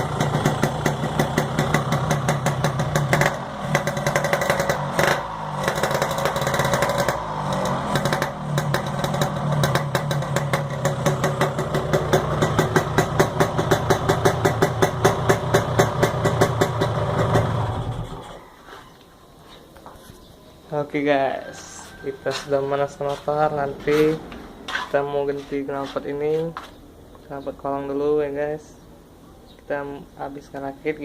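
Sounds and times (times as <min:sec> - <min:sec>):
two-stroke engine idling: 0:00.0 - 0:18.4.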